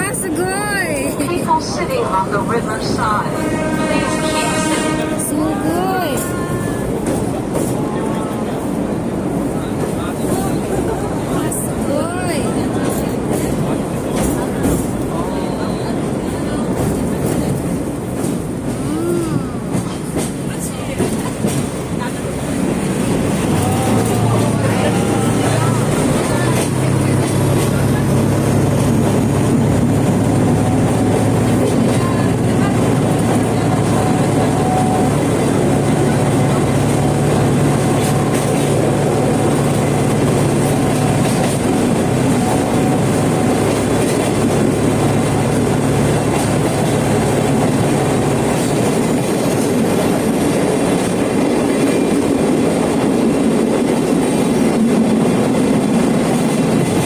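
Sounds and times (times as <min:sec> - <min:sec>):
train wheels rumbling on rails: 0:00.0 - 0:57.0.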